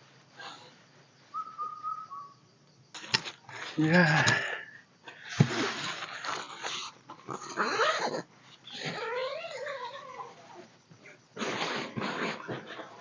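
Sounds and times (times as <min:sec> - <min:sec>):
rustling: 0:05.2 - 0:07.5.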